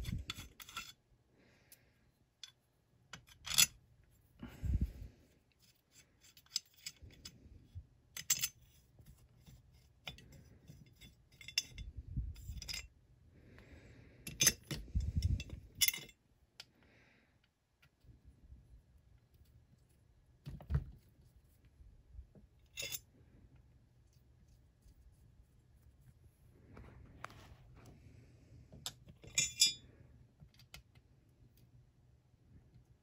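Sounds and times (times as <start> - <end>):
metal tools clinking and scraping: 0.0 - 1.0, 3.2 - 3.8, 4.5 - 7.4, 8.2 - 12.9, 14.3 - 16.2, 22.6 - 23.1, 28.8 - 29.8.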